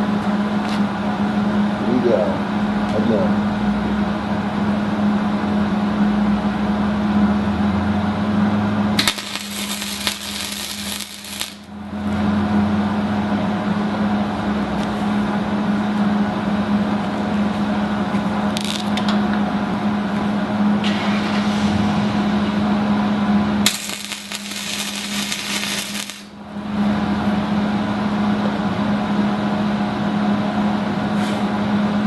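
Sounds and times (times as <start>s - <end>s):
welder electrical hum: 0.0s - 32.0s
welding arc crackling: 9.0s - 11.8s, 18.5s - 19.2s, 23.6s - 26.4s.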